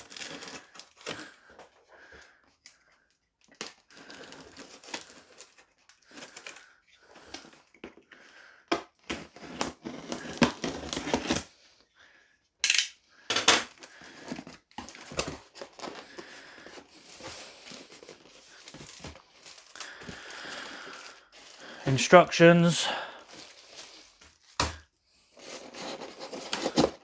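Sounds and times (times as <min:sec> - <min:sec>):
cardboard box being unpacked: 0:09.1 - 0:11.5, 0:13.8 - 0:21.8, 0:23.2 - 0:24.7, 0:25.3 - 0:27.0
packaging rustling and crinkling: 0:13.8 - 0:21.8, 0:23.2 - 0:27.0.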